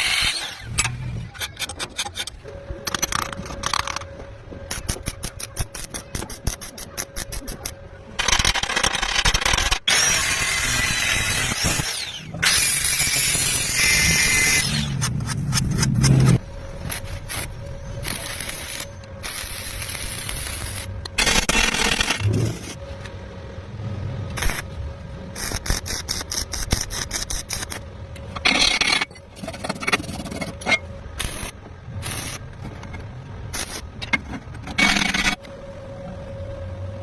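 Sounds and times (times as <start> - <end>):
faint steady hum: 2.3 - 37.0
metal scraping and rasping: 4.7 - 22.8, 25.4 - 35.5.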